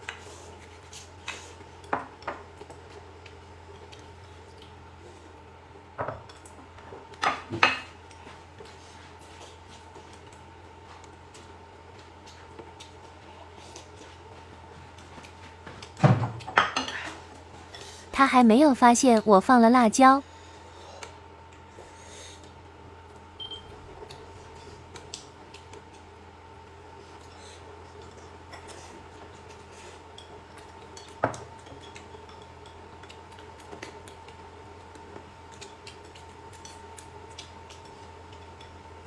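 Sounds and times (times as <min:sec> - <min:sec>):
faint hum: 0:17.6 - 0:32.0.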